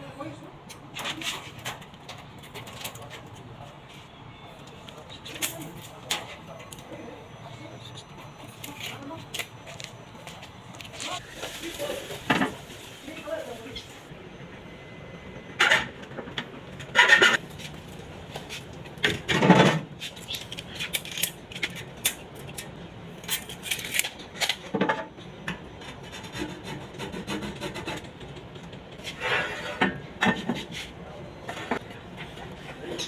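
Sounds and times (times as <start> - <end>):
scraping and rubbing on metal body: 29.0 - 33.0.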